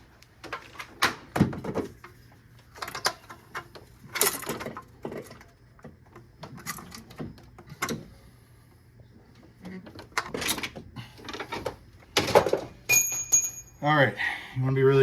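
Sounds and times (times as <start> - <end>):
tools knocking and clinking: 12.2 - 13.8.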